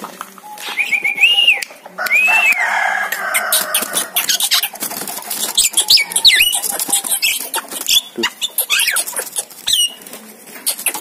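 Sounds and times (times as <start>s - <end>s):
myna whistles and chattering: 0.4s - 2.7s, 3.4s - 10.0s, 10.6s - 11.0s.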